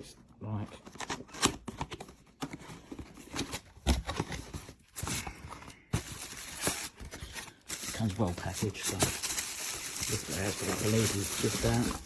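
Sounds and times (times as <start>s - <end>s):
cardboard box rustling and scraping: 10.3s - 12.0s.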